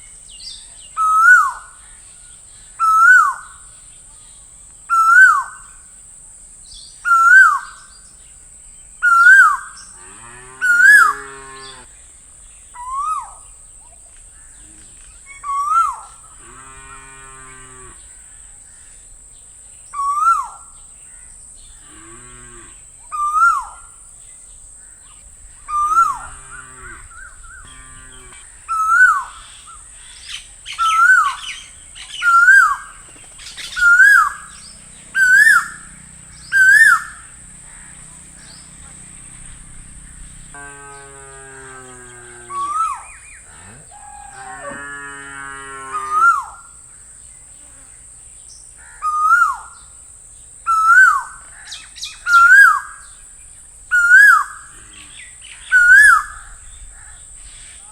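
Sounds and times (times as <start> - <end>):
deeper bird call: 25.0 - 30.2, 30.8 - 46.7
bird calling rising and falling: 25.1 - 37.4, 42.1 - 44.8, 53.9 - 54.6
steady high hiss: 42.6 - 57.9.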